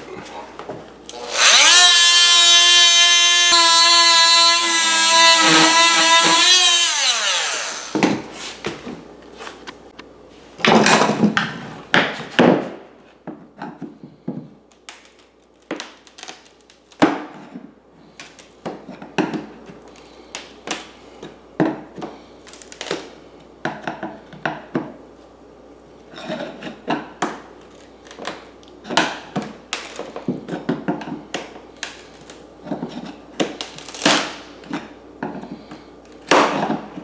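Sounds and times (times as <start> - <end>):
rasping strokes on wood: 1.2 - 8.0.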